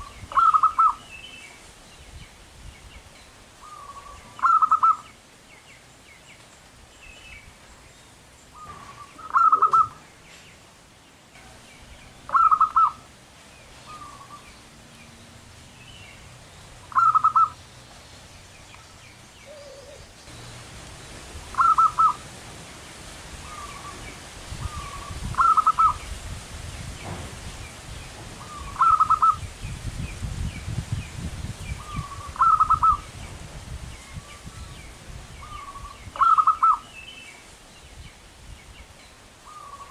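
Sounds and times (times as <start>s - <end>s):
dove cooing: 0.0s - 1.0s, 3.6s - 5.0s, 8.6s - 10.1s, 12.3s - 13.1s, 16.8s - 17.6s, 19.4s - 20.2s, 21.5s - 22.3s, 23.4s - 26.0s, 28.4s - 29.4s, 31.8s - 33.1s, 35.5s - 36.9s.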